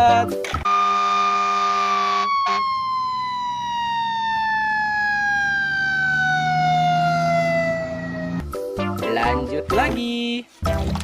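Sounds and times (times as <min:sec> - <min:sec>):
fire engine siren winding down: 0:00.6 - 0:08.5.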